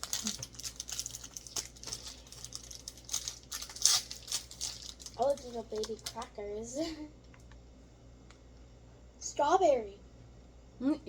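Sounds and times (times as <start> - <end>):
snack packet crinkling: 0.0 - 6.5.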